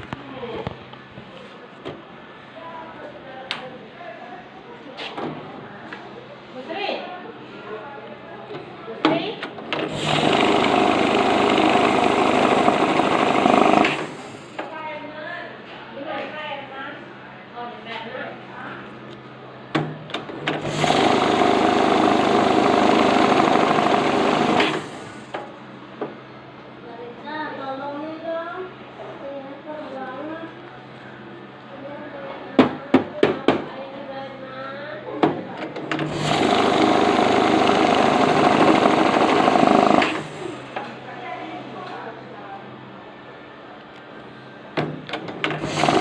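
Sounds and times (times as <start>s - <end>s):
banknote counter motor running: 9.9s - 14.4s, 20.6s - 25.3s, 36.0s - 40.5s, 45.5s - 46.0s.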